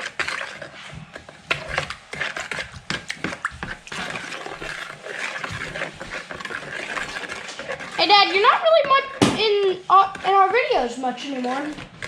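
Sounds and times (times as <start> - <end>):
soft swishing of stirring: 0.0 - 12.0.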